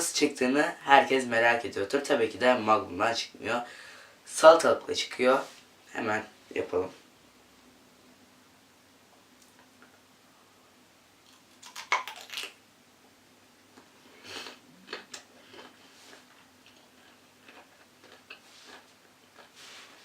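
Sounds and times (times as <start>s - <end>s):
cucumber crunching: 11.2s - 12.6s, 14.4s - 20.0s.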